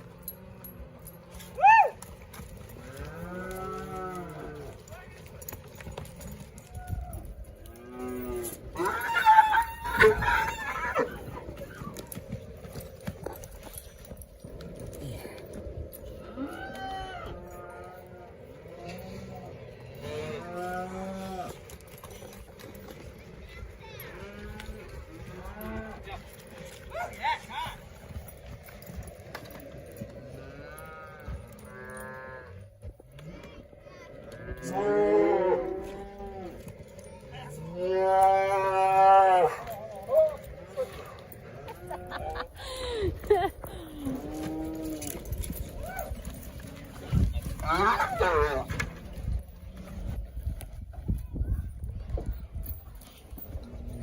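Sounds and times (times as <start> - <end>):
cattle mooing: 2.7 - 4.8, 16.3 - 21.6, 34.3 - 40.0, 47.6 - 49.0
cattle bawling: 7.8 - 12.0, 46.8 - 49.0.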